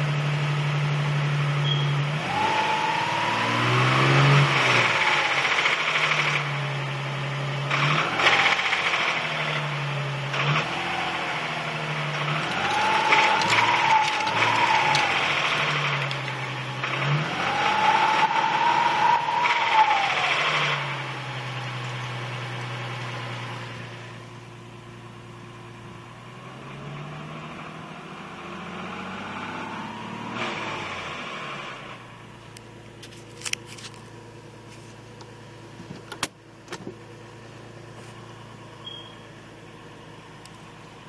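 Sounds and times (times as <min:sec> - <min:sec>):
car engine revving and idling: 0:00.0 - 0:41.0
transmission rattle and grinding: 0:11.9 - 0:18.0.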